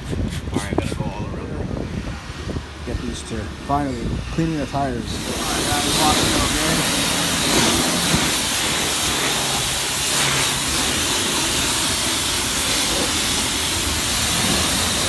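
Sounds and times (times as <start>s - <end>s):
pressure washer spraying water: 4.6s - 15.0s.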